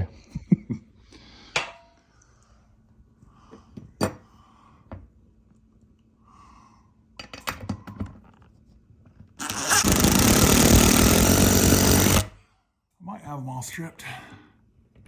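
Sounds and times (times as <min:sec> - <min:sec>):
screws and hardware clinking: 0:09.4 - 0:12.3
power drill driving screw: 0:09.4 - 0:12.4.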